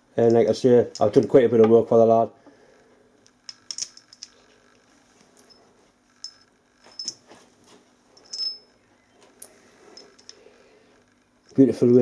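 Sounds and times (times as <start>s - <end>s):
metal fitting clinking: 8.2s - 8.8s.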